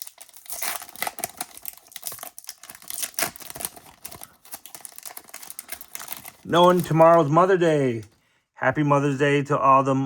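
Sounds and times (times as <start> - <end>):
foil wrapper crinkling: 0.0 - 7.5.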